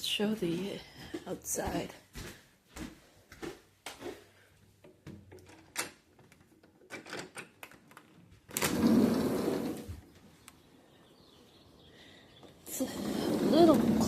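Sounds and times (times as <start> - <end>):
footsteps in a house: 0.0 - 5.4
door opening: 6.9 - 10.2.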